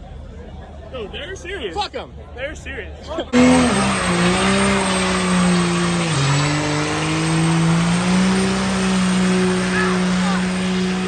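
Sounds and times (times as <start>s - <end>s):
truck engine at high revs: 3.3s - 11.0s
spinning tires squealing: 3.4s - 11.0s.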